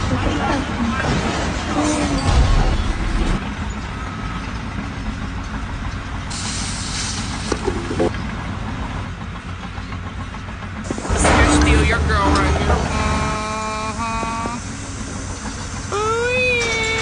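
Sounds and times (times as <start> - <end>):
vehicle engine rumbling: 0.0 - 17.0.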